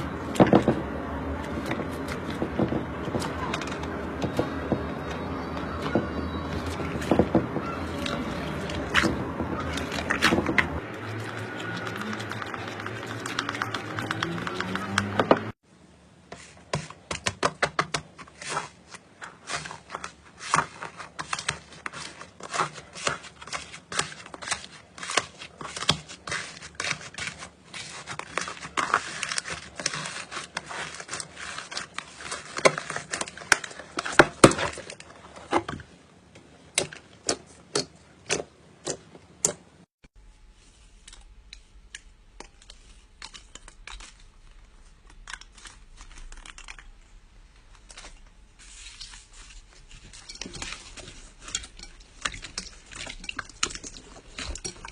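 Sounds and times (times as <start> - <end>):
slime crackling and popping: 41.1 - 48.2.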